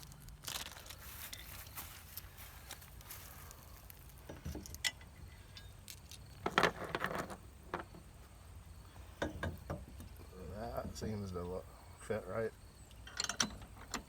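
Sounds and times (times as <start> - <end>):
metal bolts clinking: 12.9 - 14.0.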